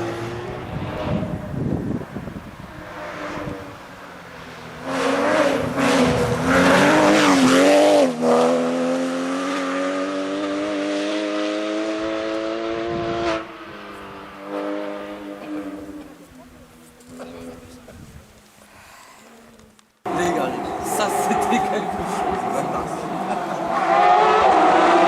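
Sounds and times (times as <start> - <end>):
rally car engine revving: 0.0 - 17.8, 20.1 - 25.0
tyre noise hiss: 17.8 - 23.2.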